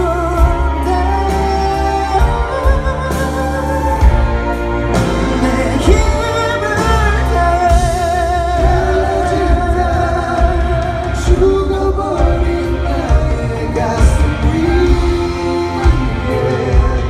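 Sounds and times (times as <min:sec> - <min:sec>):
drums and bass beat: 0:00.0 - 0:17.0
person singing with vibrato: 0:00.0 - 0:17.0.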